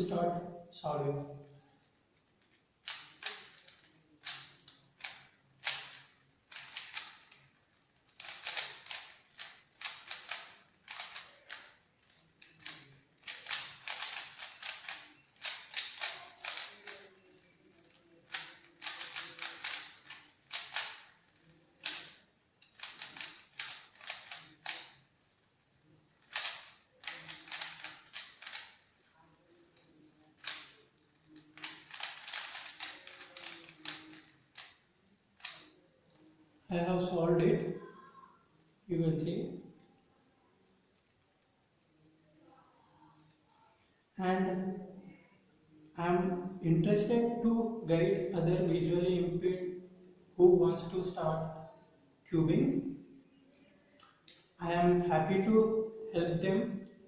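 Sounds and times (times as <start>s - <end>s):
puzzle cube layers clicking: 2.8s - 7.4s, 8.1s - 17.1s, 18.3s - 21.2s, 21.8s - 22.2s, 22.8s - 24.9s, 26.3s - 28.8s, 30.4s - 30.8s, 31.4s - 34.7s.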